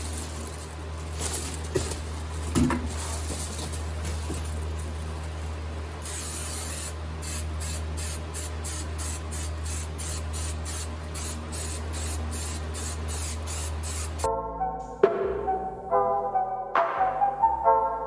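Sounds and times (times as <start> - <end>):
steady low hum: 0.0 - 18.0
aerosol can hissing: 6.0 - 14.3.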